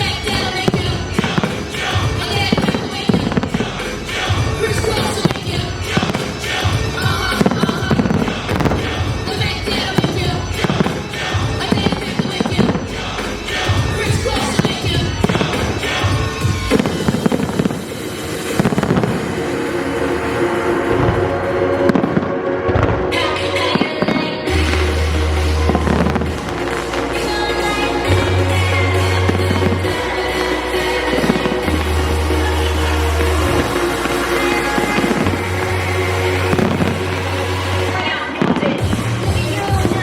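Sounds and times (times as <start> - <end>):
deep bass tone: 0.0 - 12.0, 24.5 - 38.0, 38.8 - 40.0
fireworks bangs and crackles: 0.0 - 40.0
loud music: 0.0 - 40.0.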